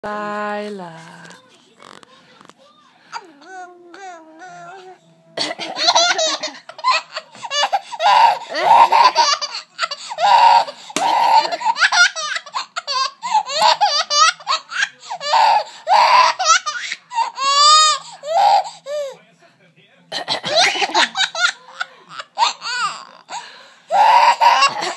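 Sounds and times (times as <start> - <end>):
baby laughing: 5.6 - 19.1, 20.5 - 24.9.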